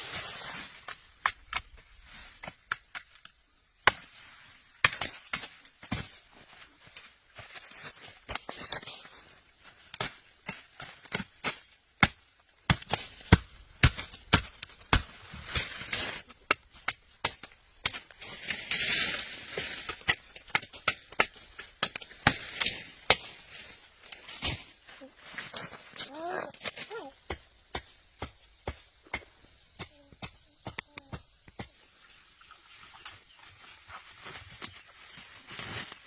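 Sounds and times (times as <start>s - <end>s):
rustling or scraping: 0.0s - 2.7s, 14.0s - 16.8s, 17.4s - 27.3s, 31.7s - 36.0s.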